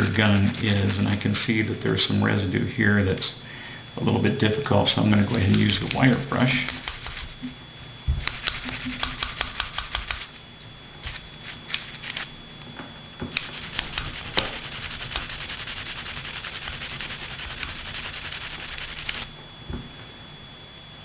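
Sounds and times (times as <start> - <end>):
wire brush scrubbing metal: 0.0 - 1.2, 13.3 - 19.3.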